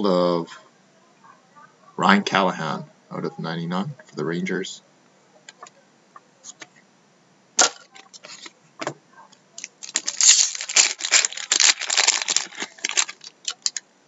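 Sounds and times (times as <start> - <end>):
card pack crinkling: 9.6 - 13.8.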